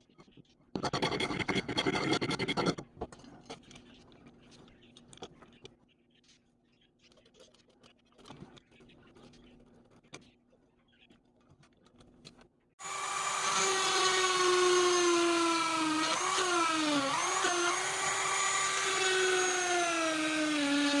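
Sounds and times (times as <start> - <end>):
power tool whining: 12.8 - 21.0.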